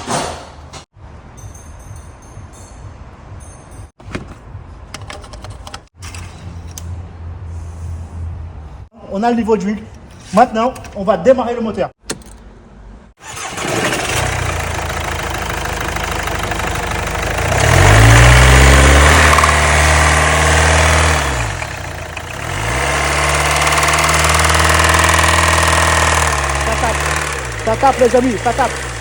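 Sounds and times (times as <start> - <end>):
car engine knocking: 14.6 - 29.0.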